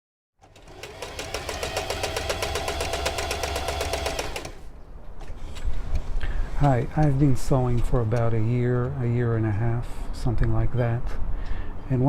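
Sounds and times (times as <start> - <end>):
sewing machine running fast: 0.4 - 4.6.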